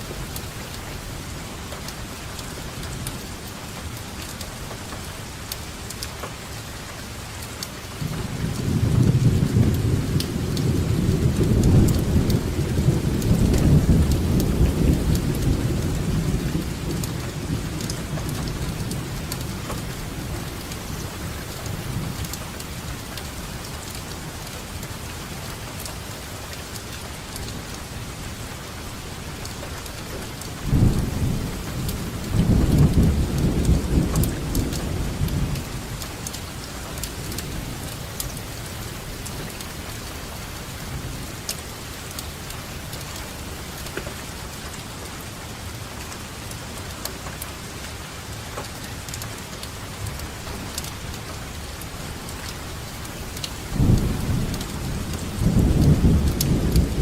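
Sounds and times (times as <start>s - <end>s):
rain drops ticking: 0.0s - 57.0s
steady rainfall: 0.0s - 57.0s
rolling thunder: 8.0s - 20.7s, 30.6s - 36.2s, 53.5s - 57.0s.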